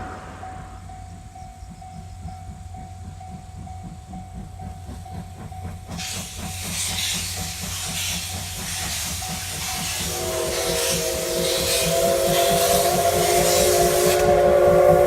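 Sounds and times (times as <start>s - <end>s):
steam locomotive running past: 0.0s - 15.0s
loud hiss of steam: 6.0s - 15.0s.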